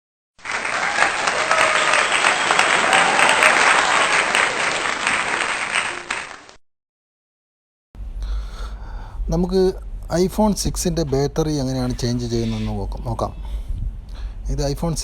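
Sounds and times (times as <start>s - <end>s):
crowd applauding: 0.4s - 6.6s.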